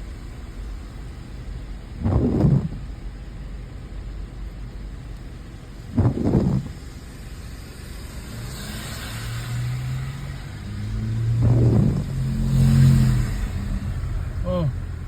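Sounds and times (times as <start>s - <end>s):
car engine humming: 0.0s - 15.0s
road noise: 0.0s - 15.0s
short low thuds: 2.0s - 2.9s, 5.9s - 6.8s, 11.3s - 12.2s.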